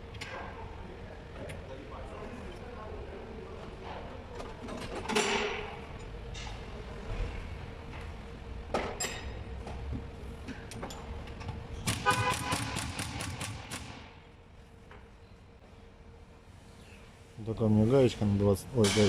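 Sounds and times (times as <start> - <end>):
steady low hum: 5.2 - 19.0.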